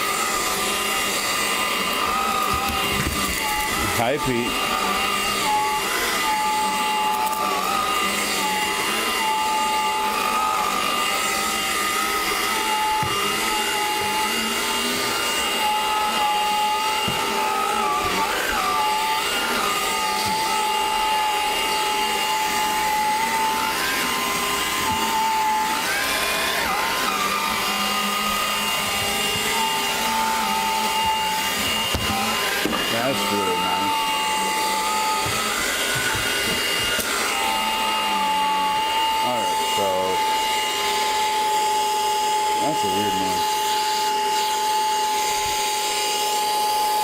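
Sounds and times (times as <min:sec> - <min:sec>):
stick vacuum motor whine: 0:00.0 - 0:47.0.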